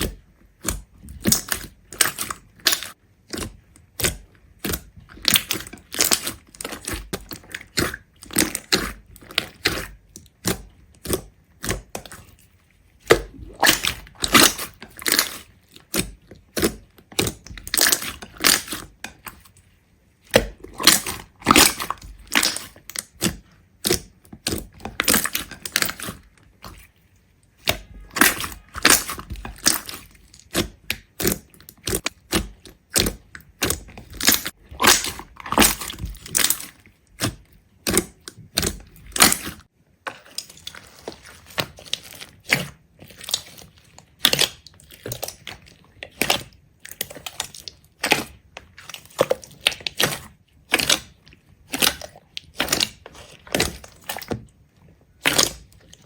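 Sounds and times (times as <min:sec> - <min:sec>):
sharp cracking and crunching: 0:27.7 - 0:54.5, 0:55.2 - 0:56.0.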